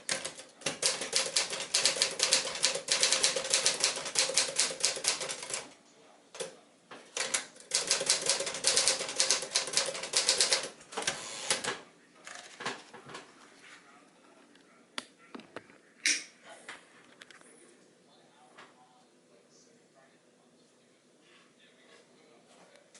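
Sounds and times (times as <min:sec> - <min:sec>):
typewriter keystrokes: 0:00.0 - 0:05.7, 0:07.2 - 0:11.8.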